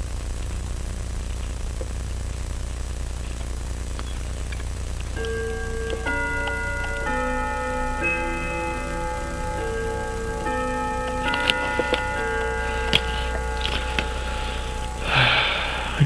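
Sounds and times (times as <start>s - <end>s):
low steady hum: 0.0s - 16.0s
chime-like bell melody: 5.2s - 16.0s.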